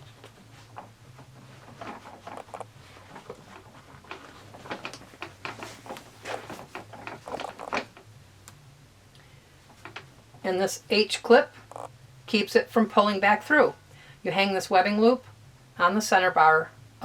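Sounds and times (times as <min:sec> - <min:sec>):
rustling and scraping handling: 0:00.0 - 0:08.0
faint low hum: 0:00.0 - 0:17.0.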